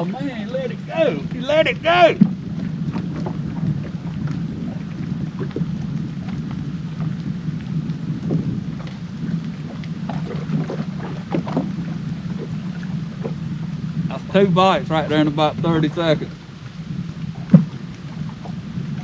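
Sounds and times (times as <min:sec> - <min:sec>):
waves slapping against boat hull: 0:00.0 - 0:19.0
wind rumbling on microphone: 0:00.0 - 0:19.0.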